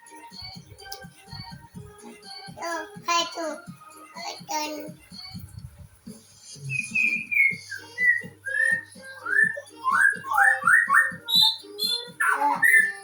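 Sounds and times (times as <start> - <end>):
whistled notes: 6.4 - 13.0.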